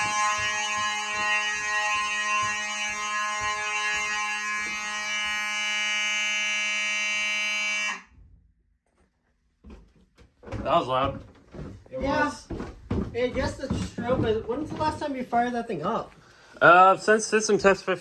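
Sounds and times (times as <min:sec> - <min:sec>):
fire alarm horn buzzing: 0:00.0 - 0:08.3
low knocks: 0:10.4 - 0:15.2.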